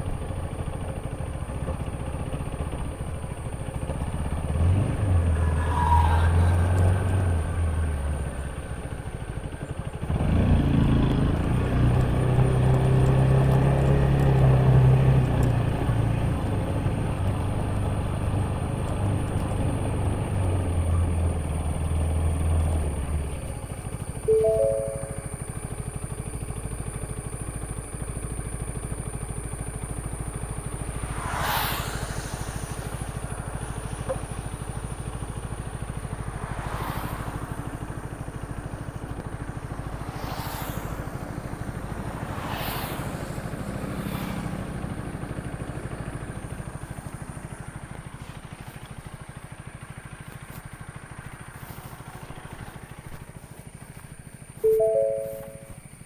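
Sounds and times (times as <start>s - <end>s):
motorcycle engine running: 0.0s - 5.7s, 6.4s - 56.0s
brief rushing swells: 30.8s - 34.0s.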